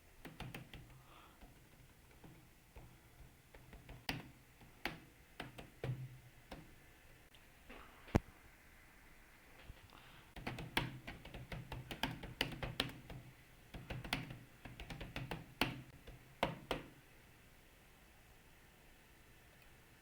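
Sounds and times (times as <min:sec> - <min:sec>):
keyboard typing: 0:00.2 - 0:06.8, 0:10.4 - 0:17.0.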